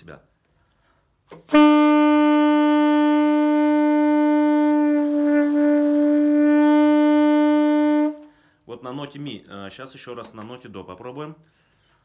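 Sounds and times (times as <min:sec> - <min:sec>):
saxophone long tone: 0:01.4 - 0:08.4.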